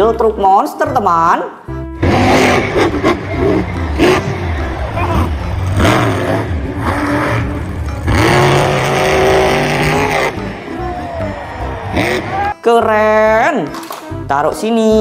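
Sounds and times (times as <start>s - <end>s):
car engine revving: 2.0s - 12.5s.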